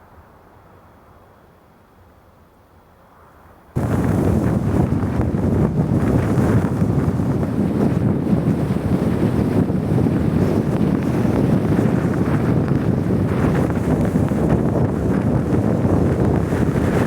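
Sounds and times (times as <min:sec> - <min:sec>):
blizzard wind on microphone: 0:03.8 - 0:17.0.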